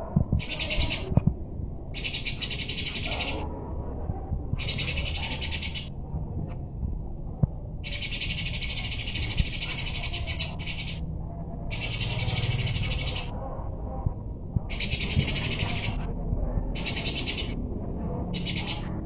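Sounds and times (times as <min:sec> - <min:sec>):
low background rumble: 0:00.0 - 0:19.0
songbird chattering trills: 0:02.0 - 0:03.4, 0:04.6 - 0:05.9, 0:07.8 - 0:11.0, 0:11.7 - 0:13.3, 0:14.7 - 0:16.0, 0:16.8 - 0:17.6.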